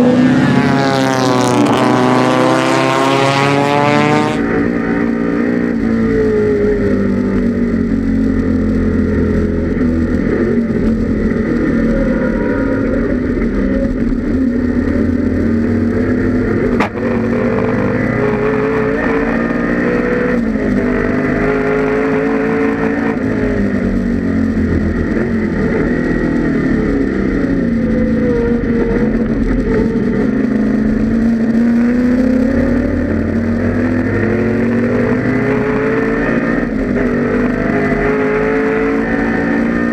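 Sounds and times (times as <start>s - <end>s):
racing car engine: 0.0s - 39.9s.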